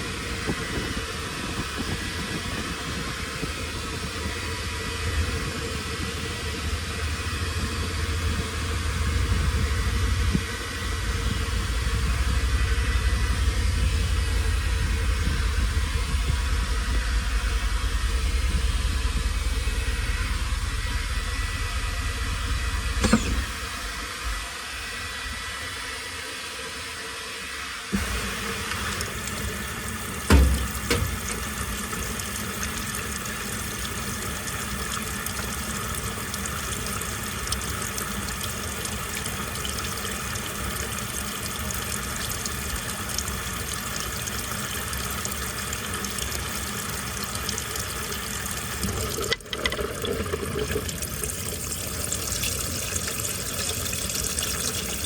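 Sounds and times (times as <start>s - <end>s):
washing machine low hum: 0.0s - 55.0s
water rushing into drum: 28.0s - 55.0s.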